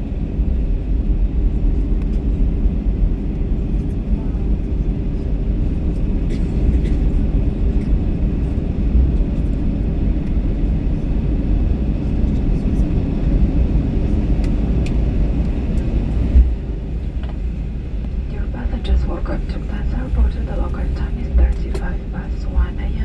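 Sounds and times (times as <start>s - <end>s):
aircraft engines and wheels rumbling: 0.0s - 23.0s
aircraft bump: 14.4s - 23.0s
faint steady hum: 15.8s - 23.0s.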